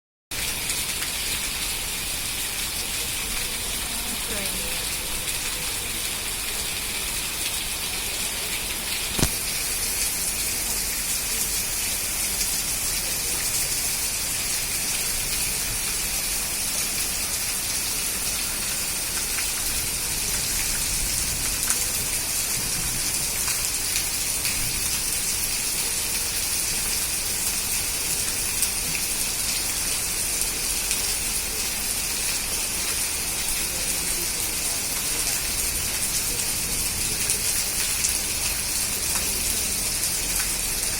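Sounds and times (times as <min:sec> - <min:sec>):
heavy rain hissing: 0:00.4 - 0:40.9
sharp click: 0:09.2 - 0:09.4.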